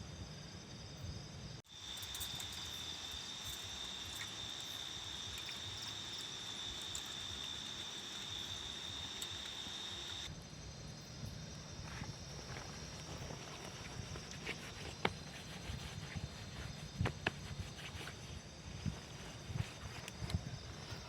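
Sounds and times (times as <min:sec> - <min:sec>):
background hiss: 0:00.0 - 0:21.0
insect trilling: 0:01.7 - 0:10.3.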